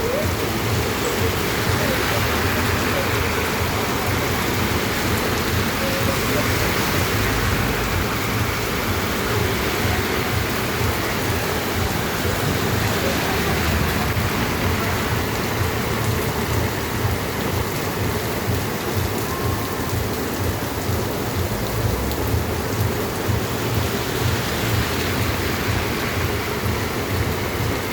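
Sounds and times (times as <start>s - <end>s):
heavy rain hissing: 0.0s - 27.9s.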